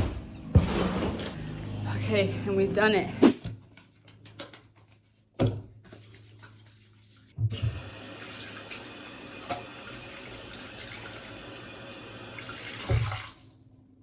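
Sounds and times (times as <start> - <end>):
tap water running into sink: 7.5 - 13.4.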